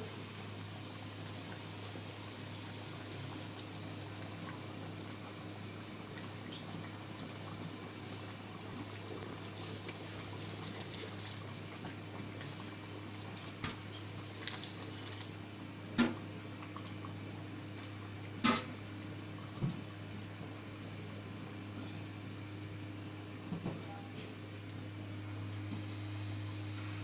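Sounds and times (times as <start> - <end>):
curry bubbling in a pot: 0.0 - 23.5.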